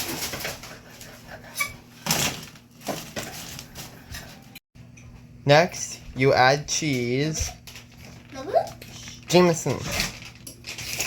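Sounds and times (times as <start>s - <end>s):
fries rustling and clattering on tray: 0.0s - 1.0s, 6.7s - 11.0s.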